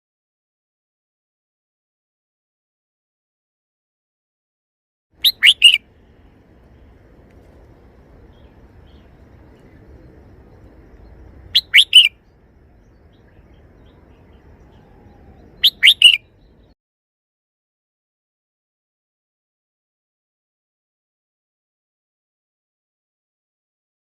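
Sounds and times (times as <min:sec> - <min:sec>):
bird singing short phrases: 0:05.2 - 0:05.8, 0:08.2 - 0:16.8
faint low hum: 0:05.2 - 0:16.8.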